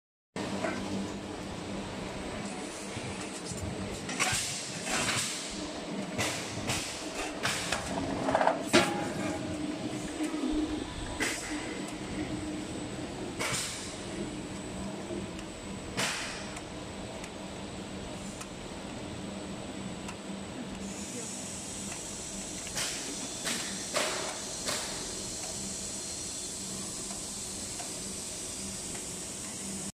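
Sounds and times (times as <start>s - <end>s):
short machine hisses: 20.8s - 29.8s.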